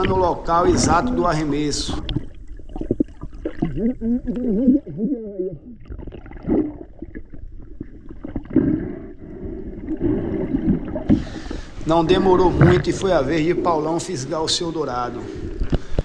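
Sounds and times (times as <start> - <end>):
muffled call through water: 0.0 - 2.4
water gurgling underwater: 0.0 - 14.0.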